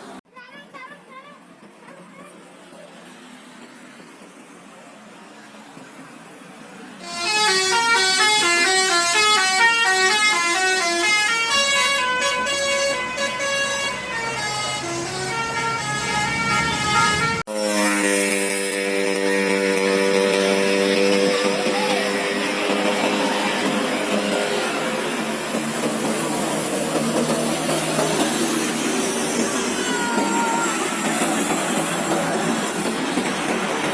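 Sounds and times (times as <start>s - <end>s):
horn holding steady chord: 7.0s - 23.6s
multi-tone bus horn melody: 7.0s - 25.1s.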